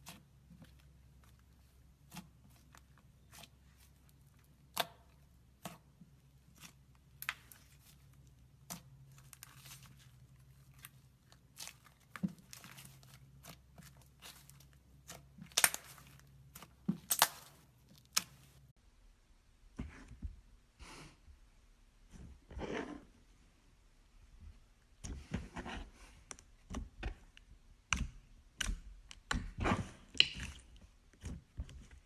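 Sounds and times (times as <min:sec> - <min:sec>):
slime popping and crackling: 0:10.8 - 0:18.6.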